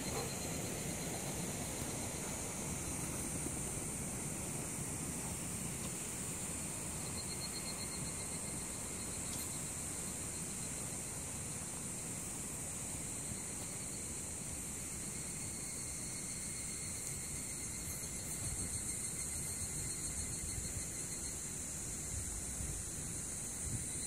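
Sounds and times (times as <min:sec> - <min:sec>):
cicadas calling in chorus: 0:00.0 - 0:24.0
fast pulsing insect trill: 0:00.0 - 0:24.0.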